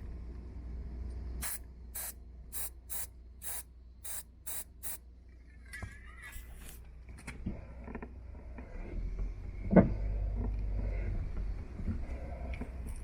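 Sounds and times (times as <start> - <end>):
aerosol can hissing bursts: 1.4 - 5.0.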